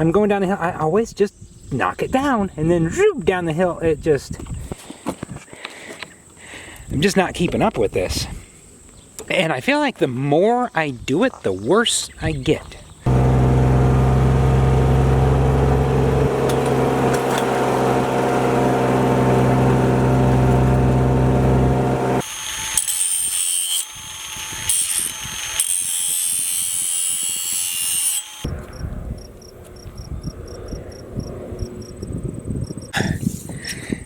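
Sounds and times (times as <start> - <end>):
tractor engine running: 13.1 - 22.2.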